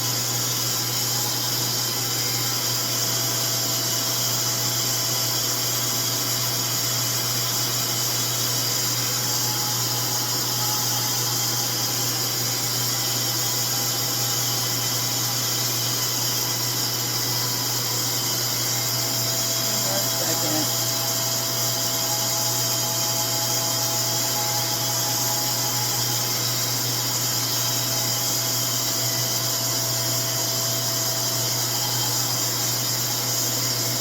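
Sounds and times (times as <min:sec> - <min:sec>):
hair dryer running: 0:08.4 - 0:34.0.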